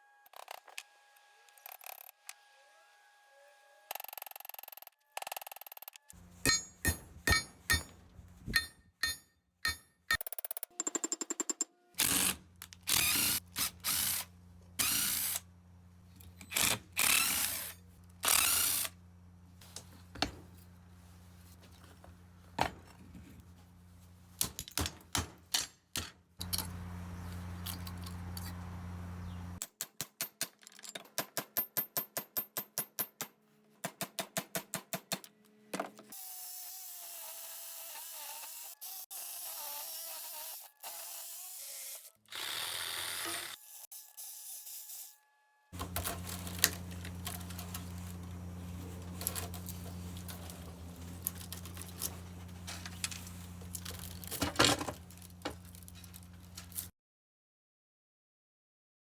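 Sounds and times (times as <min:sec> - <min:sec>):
power drill bursts: 0:12.0 - 0:15.5, 0:16.5 - 0:19.0, 0:38.0 - 0:43.8.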